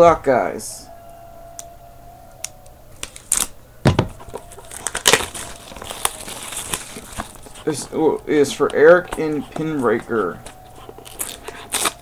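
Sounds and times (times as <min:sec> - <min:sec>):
packaging tearing and crinkling: 0:03.0 - 0:03.6, 0:04.2 - 0:09.2, 0:10.4 - 0:12.0
heavy knock: 0:03.8 - 0:04.2.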